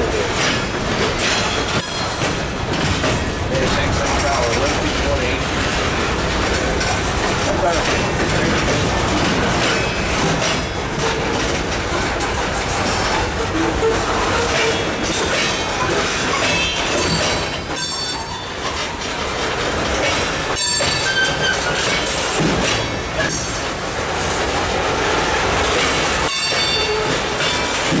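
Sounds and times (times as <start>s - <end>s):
train wheels clattering on rails: 0.0s - 28.0s
high-pitched wheel squeals: 20.6s - 22.2s.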